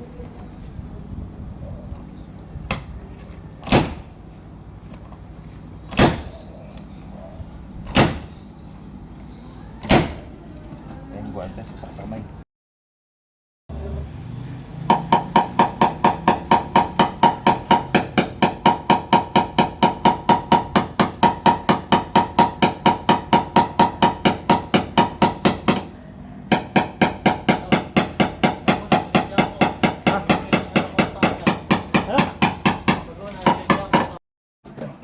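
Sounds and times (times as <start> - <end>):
hammer tapping sheet metal: 26.5 - 34.2.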